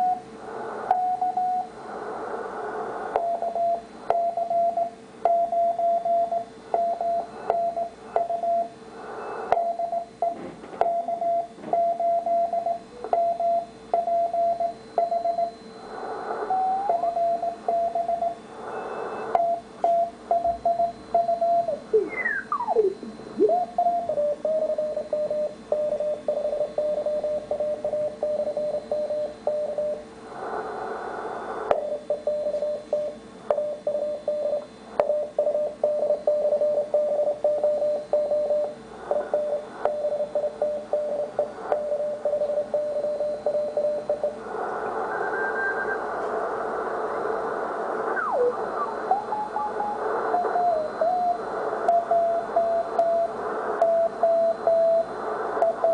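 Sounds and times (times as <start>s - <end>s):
radio band hiss: 0.0s - 3.2s, 8.8s - 9.5s, 15.5s - 17.7s, 21.7s - 24.9s, 30.0s - 32.3s, 44.2s - 55.9s.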